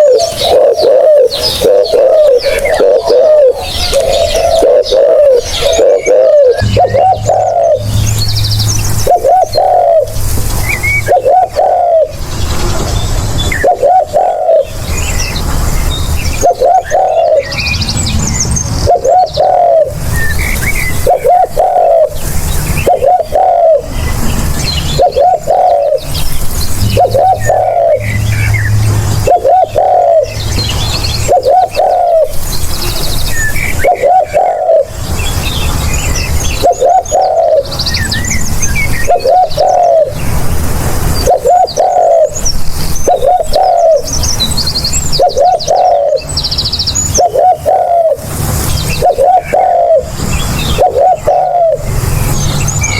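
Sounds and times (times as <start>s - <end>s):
dove cooing: 0.0s - 12.2s, 13.5s - 14.8s, 16.4s - 17.8s, 18.8s - 24.0s, 24.7s - 32.4s, 33.4s - 35.0s, 36.6s - 38.4s, 39.0s - 40.2s, 41.2s - 42.4s, 43.0s - 44.2s, 45.1s - 46.3s, 47.1s - 52.0s
small birds chirping: 0.0s - 52.9s.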